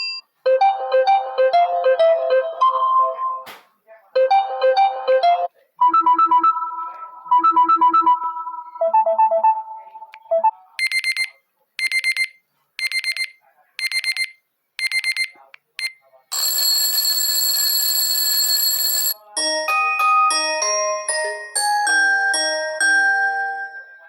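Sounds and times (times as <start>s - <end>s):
electronic ringtone melody: 0.0s - 3.4s, 4.2s - 10.6s
harsh steady ringing tone: 16.3s - 19.2s
chiming melody: 19.2s - 24.0s.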